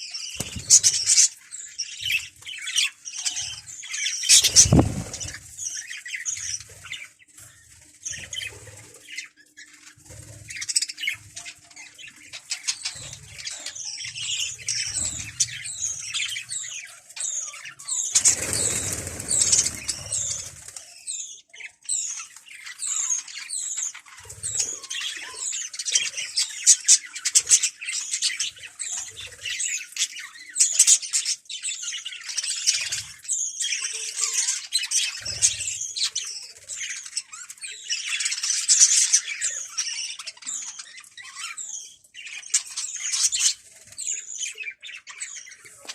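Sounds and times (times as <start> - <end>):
small birds chirping: 0.0 - 45.9
wings flapping: 0.4 - 1.2, 4.3 - 5.5, 18.2 - 20.8.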